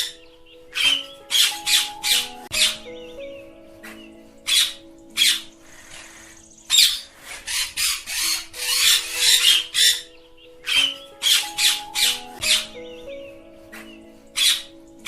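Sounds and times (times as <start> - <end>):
parakeets screeching: 0.0 - 2.8, 4.5 - 12.7, 14.4 - 14.7.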